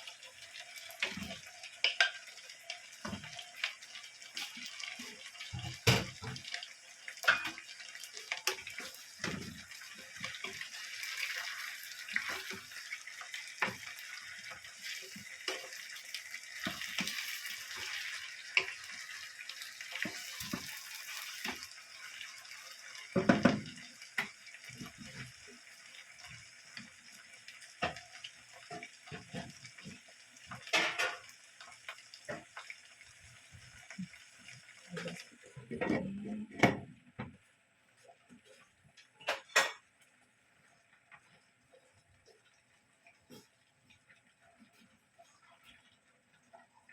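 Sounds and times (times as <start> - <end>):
dishes and utensils clinking: 7.2 - 9.6, 30.6 - 31.3, 39.2 - 39.8.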